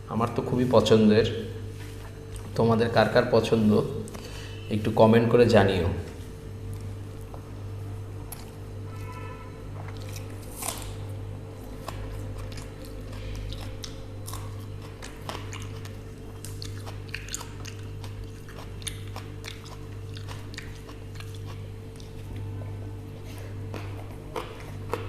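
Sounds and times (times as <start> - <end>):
steady low hum: 0.0 - 25.0
person chewing with crunches: 1.6 - 2.6, 6.0 - 25.0.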